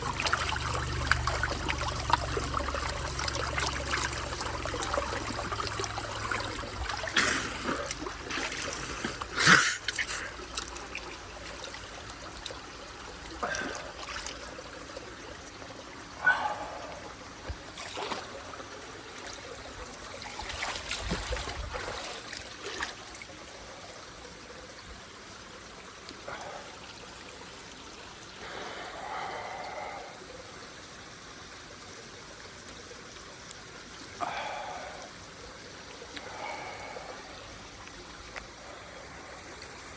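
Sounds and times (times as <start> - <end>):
water running and trickling: 0.0 - 39.9.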